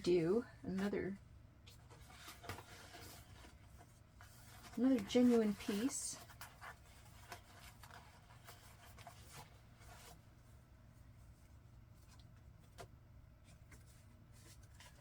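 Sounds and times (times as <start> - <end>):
low room hum: 0.0 - 15.0
paper rustling and tapping: 1.7 - 10.2.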